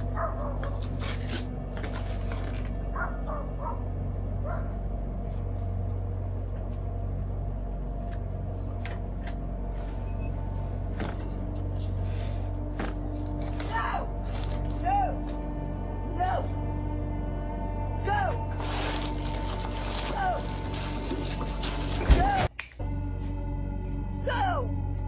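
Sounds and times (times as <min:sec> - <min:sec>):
steady low hum: 0:00.0 - 0:25.0
rustling and crinkling package: 0:00.6 - 0:02.8, 0:12.8 - 0:14.8, 0:18.6 - 0:22.8.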